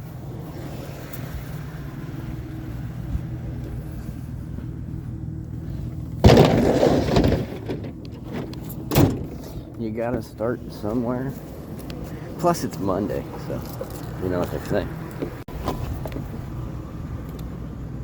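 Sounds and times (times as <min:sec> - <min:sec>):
vehicle running low hum: 0:00.0 - 0:18.0
loud crash and clatter: 0:06.2 - 0:09.4.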